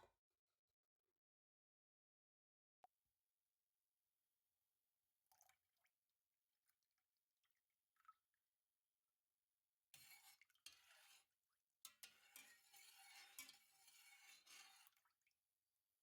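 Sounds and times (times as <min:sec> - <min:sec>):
utensil stirring in a pot: 0:10.0 - 0:15.2.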